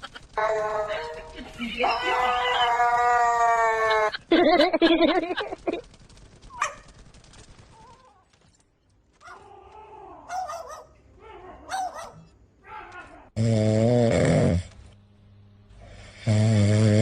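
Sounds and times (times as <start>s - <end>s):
dog yipping and whining: 11.6s - 12.2s.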